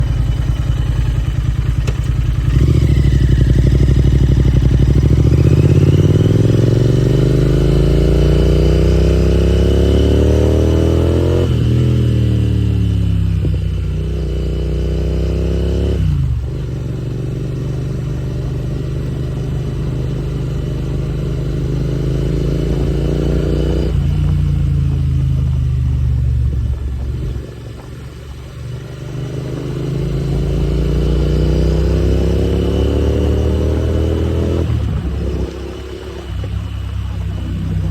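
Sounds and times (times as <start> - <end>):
motorcycle engine and exhaust: 0.0 - 37.9.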